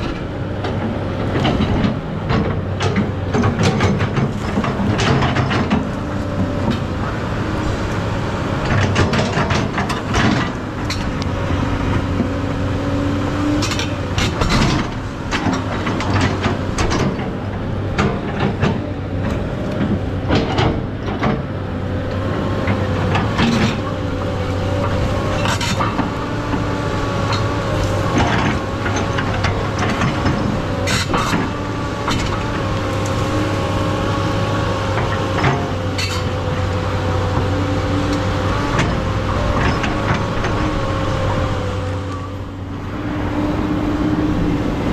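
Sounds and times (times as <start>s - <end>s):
excavator diesel engine: 0.0s - 44.9s
sharp metal clanks and knocks: 35.0s - 36.4s.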